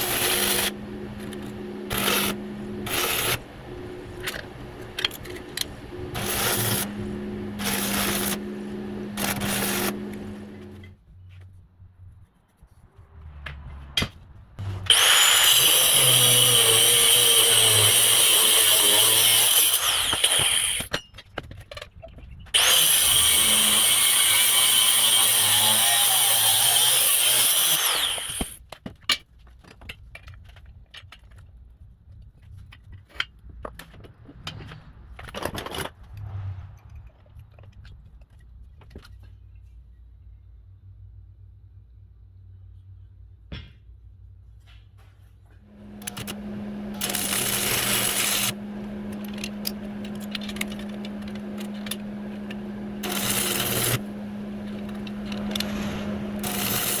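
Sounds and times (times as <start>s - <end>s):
power tool whirring: 0.0s - 10.9s, 14.6s - 20.9s, 22.6s - 28.6s, 45.7s - 57.0s.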